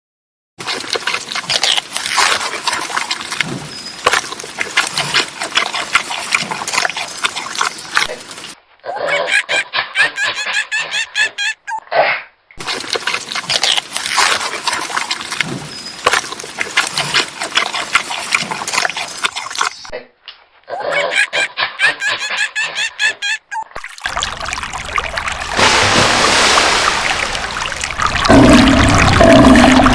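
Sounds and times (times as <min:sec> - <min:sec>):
dense noisy animal sounds: 0:26.4 - 0:29.9.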